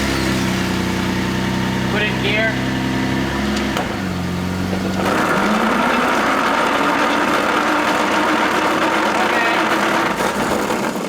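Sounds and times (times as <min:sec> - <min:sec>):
engine idling: 0:00.0 - 0:11.0
transfer case grinding and whining: 0:02.2 - 0:11.0.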